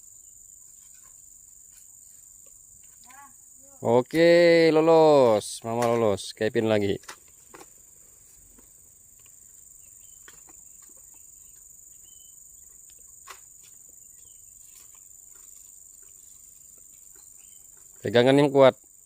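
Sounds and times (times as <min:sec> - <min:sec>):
high-pitched insect chorus: 0:00.0 - 0:19.0
bird chirps: 0:09.7 - 0:13.2, 0:14.0 - 0:18.2.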